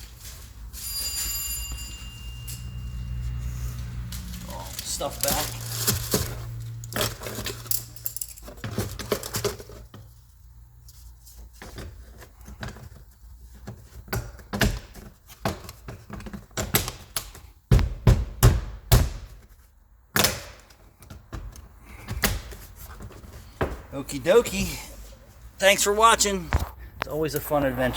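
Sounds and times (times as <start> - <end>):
loud knocks: 17.7 - 19.3.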